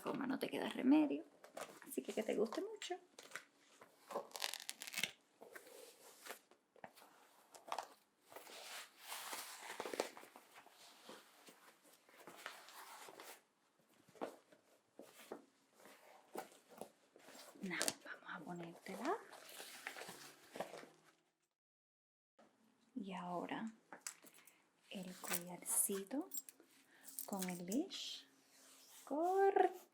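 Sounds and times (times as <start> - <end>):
leather creaking and rustling: 4.1 - 5.1, 25.0 - 25.5, 26.3 - 26.5, 27.1 - 27.7.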